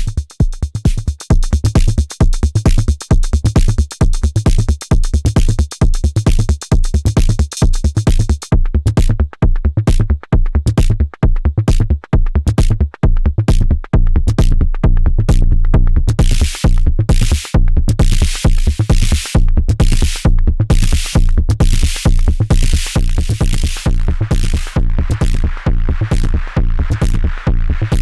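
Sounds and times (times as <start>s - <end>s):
hi-hat hits: 0.0s - 8.5s, 16.1s - 27.2s
drum machine electronic beat: 0.0s - 28.0s
heavy fast kick drum: 0.0s - 28.0s
hissing high percussion: 16.2s - 21.2s.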